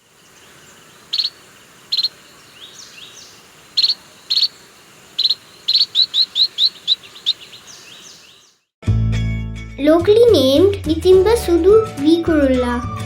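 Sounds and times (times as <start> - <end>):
bird high chirps: 0.2 - 8.7.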